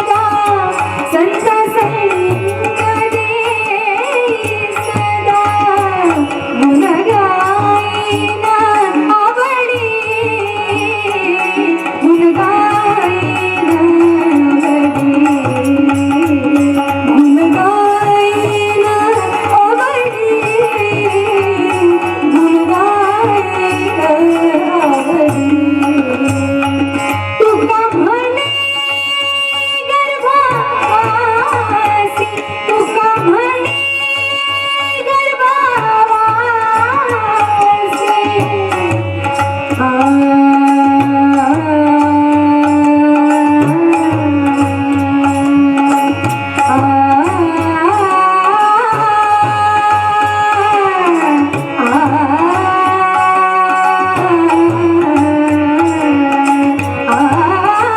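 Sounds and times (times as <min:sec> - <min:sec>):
woman singing devotional song: 0:00.0 - 0:57.9
hand drum rhythm: 0:35.8 - 0:57.9.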